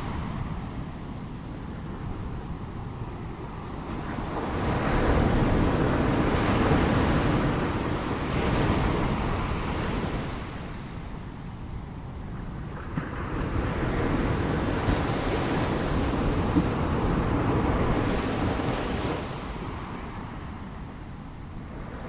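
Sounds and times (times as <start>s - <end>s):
ocean waves breaking: 0.0s - 10.9s
wind on microphone: 0.0s - 22.0s.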